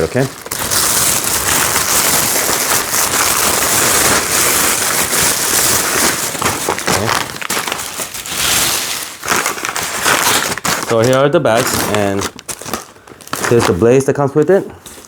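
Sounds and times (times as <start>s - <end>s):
plastic bag crinkling: 0.0s - 15.0s.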